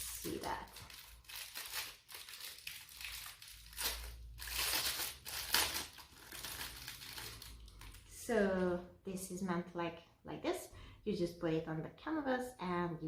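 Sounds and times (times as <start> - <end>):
packaging crinkling and rustling: 0.0 - 8.1.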